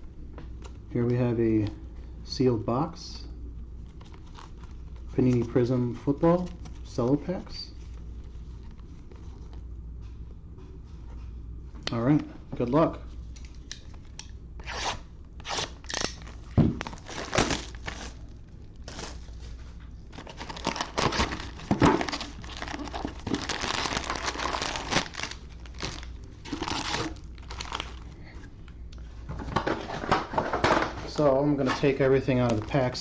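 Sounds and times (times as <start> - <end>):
plastic wrapping crinkling: 15.5 - 28.3.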